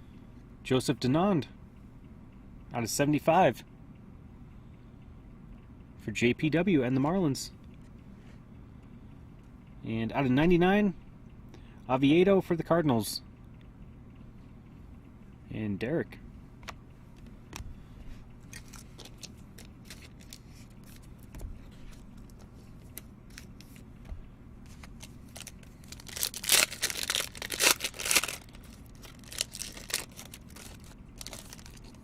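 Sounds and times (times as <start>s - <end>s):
cards clicking and rustling: 18.4s - 23.9s, 24.7s - 32.0s
wrapper tearing and crinkling: 18.5s - 21.0s, 24.7s - 32.0s.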